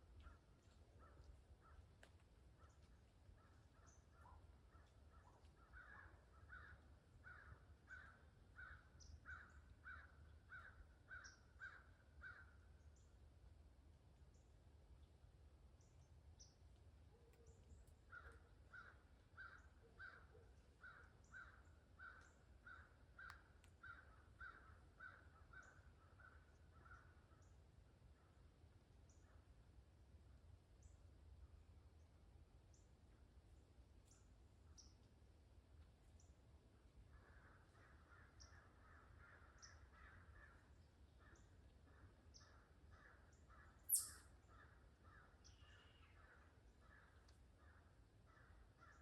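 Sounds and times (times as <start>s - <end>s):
distant crows cawing: 4.7s - 12.6s, 18.1s - 27.2s, 37.1s - 41.4s
faint bird calling: 17.4s - 27.5s, 37.1s - 49.0s
small birds chipping: 43.7s - 44.6s.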